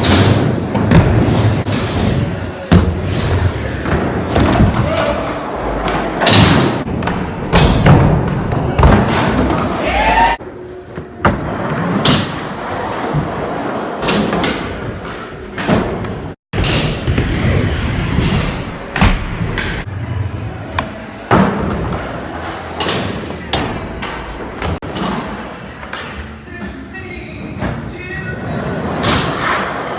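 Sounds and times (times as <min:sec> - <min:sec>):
skateboards rolling: 0:09.0 - 0:16.4, 0:24.2 - 0:29.9.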